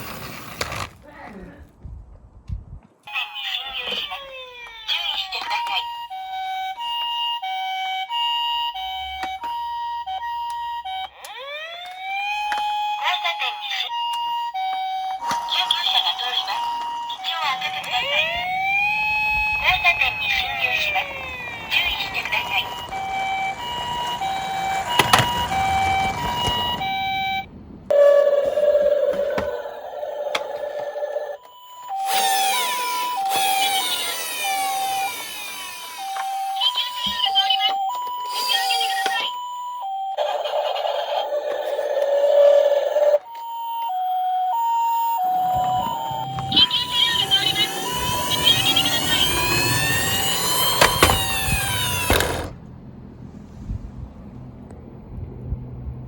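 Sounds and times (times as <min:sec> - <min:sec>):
toy electronic siren: 0:03.0 - 0:52.6
falling sweeping tones: 0:16.6 - 0:36.6, 0:43.8 - 0:52.6.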